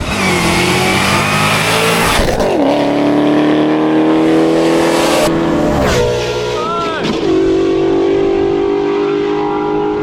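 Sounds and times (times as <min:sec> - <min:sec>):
car engine revving hard: 0:00.0 - 0:10.0.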